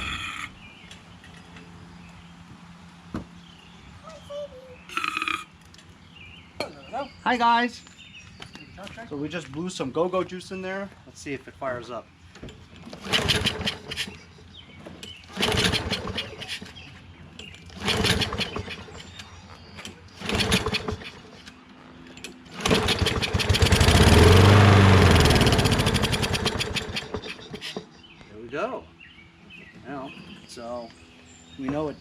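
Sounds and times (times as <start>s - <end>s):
mower engine running: 12.8s - 14.2s, 15.1s - 27.8s.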